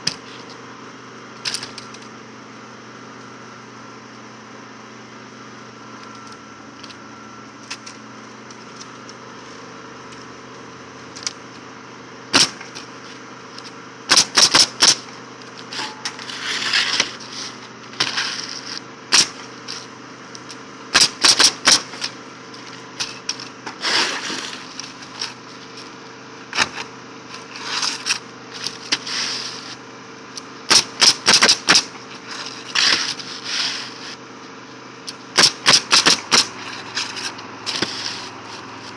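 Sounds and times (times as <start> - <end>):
pneumatic nail gun firing: 1.4 - 2.0, 12.3 - 12.9, 14.0 - 19.9, 20.5 - 22.2, 23.0 - 25.9, 26.5 - 34.2, 35.1 - 38.6.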